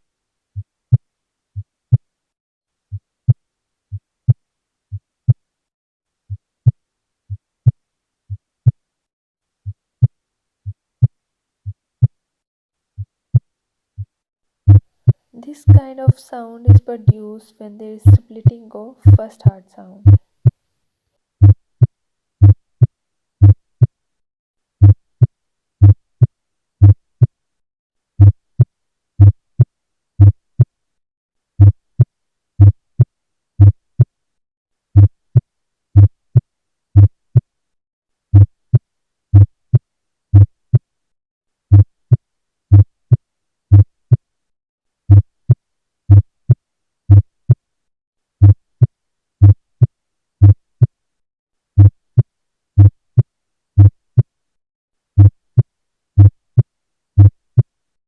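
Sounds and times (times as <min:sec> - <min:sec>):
heartbeat through stethoscope: 0:02.9 - 0:05.4, 0:18.1 - 0:19.3, 0:20.0 - 0:20.2, 0:21.4 - 0:21.6, 0:22.4 - 0:22.6, 0:23.4 - 0:23.9, 0:24.8 - 0:25.0, 0:25.8 - 0:26.0, 0:28.2 - 0:30.7, 0:31.6 - 0:34.1, 0:36.0 - 0:36.4, 0:37.0 - 0:37.4, 0:41.7 - 0:44.2, 0:50.4 - 0:50.6, 0:52.8 - 0:53.0, 0:57.2 - 0:57.4.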